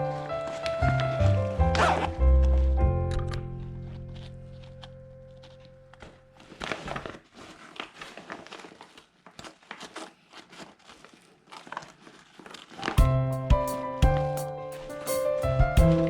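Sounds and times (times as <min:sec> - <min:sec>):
background music: 0:00.0 - 0:04.8, 0:13.0 - 0:16.0
crinkling and rustling: 0:00.0 - 0:16.0.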